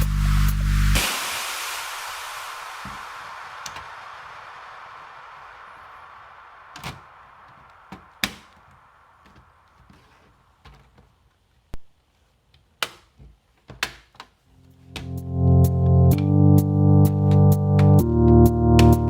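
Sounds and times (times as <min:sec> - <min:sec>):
faint hiss: 0:00.0 - 0:12.4.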